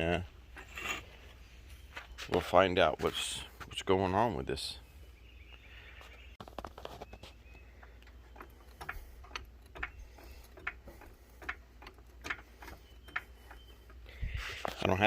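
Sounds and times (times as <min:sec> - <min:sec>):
floor jack pumping and clicking: 0:07.8 - 0:14.9.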